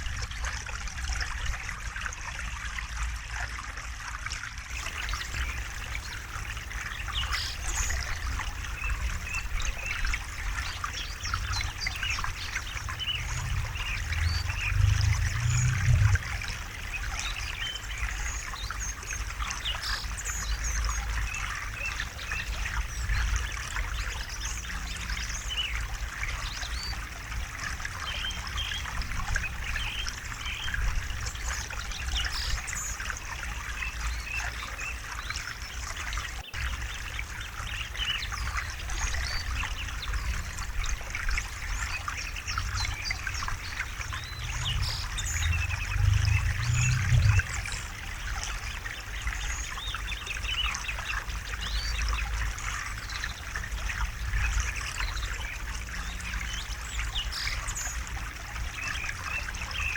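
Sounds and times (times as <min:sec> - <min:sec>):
river water babbling over stones: 0:00.0 - 0:59.9
low rumble of current: 0:04.7 - 0:34.2, 0:38.2 - 0:49.9.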